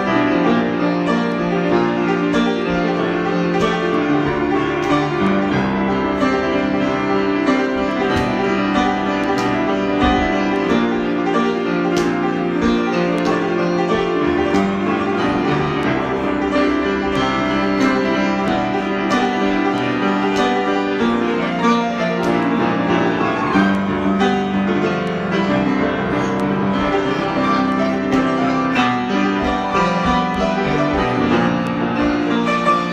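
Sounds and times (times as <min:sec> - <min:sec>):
improvised instrumental music: 0:00.0 - 0:32.9.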